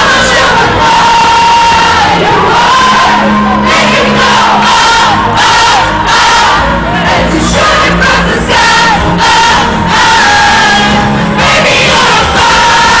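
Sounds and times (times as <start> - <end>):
crowd singing along: 0.0 - 13.0
live band playing and singing: 0.0 - 13.0.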